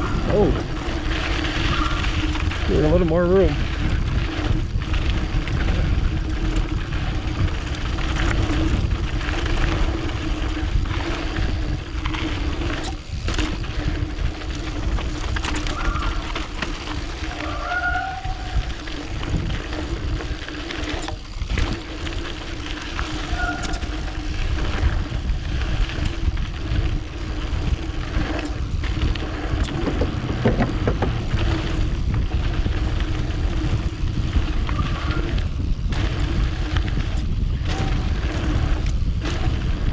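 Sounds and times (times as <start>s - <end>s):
bike rattling: 0.0s - 39.9s
bike tyres rolling on dirt: 0.0s - 39.9s
wind rushing over microphone: 0.0s - 39.9s
short squeaks: 23.2s - 24.0s.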